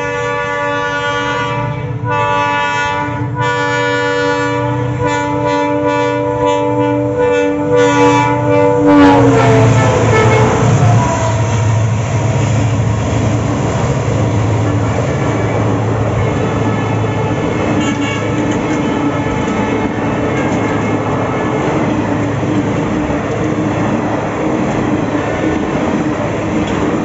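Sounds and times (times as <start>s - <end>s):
locomotive air horns chord: 0.0s - 13.1s, 15.2s - 22.0s
passing train: 0.0s - 27.0s.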